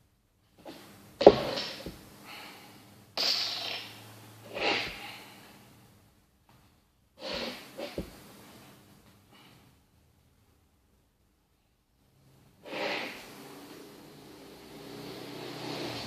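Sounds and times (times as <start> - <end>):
person breathing and sniffing: 4.4 - 5.6, 7.2 - 8.4, 12.6 - 13.4.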